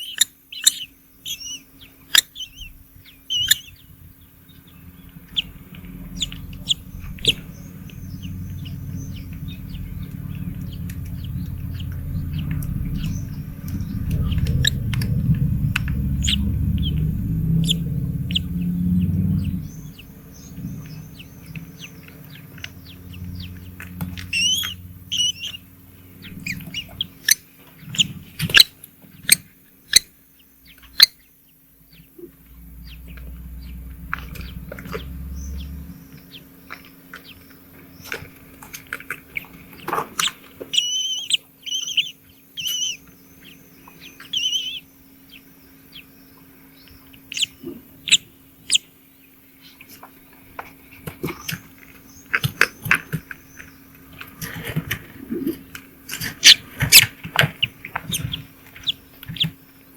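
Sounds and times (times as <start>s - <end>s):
small birds chirping: 0.0s - 59.9s
low rumble: 2.4s - 28.4s, 31.8s - 39.8s.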